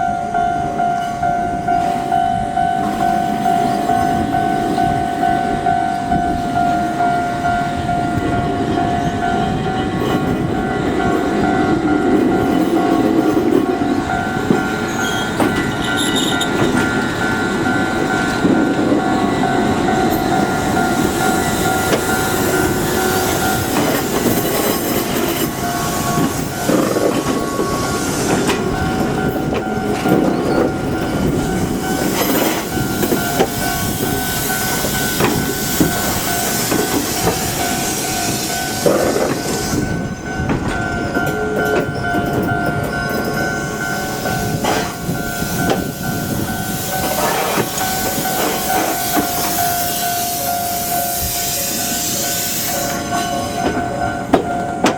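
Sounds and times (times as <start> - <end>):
level crossing alarm ringing: 0.0 - 54.9
train wheels rumbling on rails: 0.0 - 54.9.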